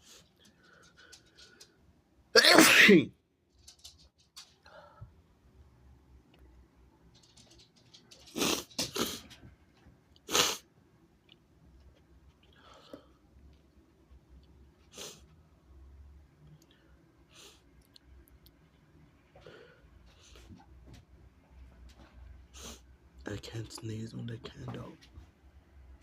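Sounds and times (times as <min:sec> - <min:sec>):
faint breaths and sniffles: 0:00.0 - 0:02.0, 0:08.0 - 0:09.5, 0:19.3 - 0:20.8
person sneezing: 0:02.4 - 0:03.1, 0:10.3 - 0:10.6
person breathing and sniffing: 0:14.9 - 0:15.3, 0:22.5 - 0:22.9.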